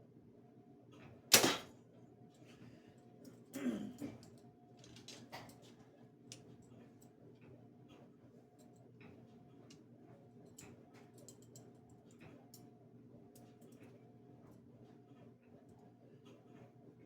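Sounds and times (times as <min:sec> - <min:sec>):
rustle and clatter: 0:04.2 - 0:07.1.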